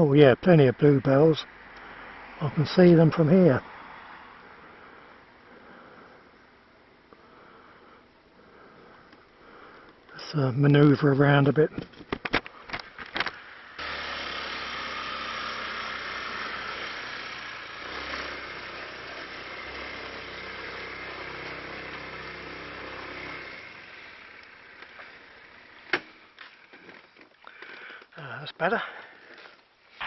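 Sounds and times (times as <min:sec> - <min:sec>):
motorcycle engine running: 0:13.8 - 0:26.9.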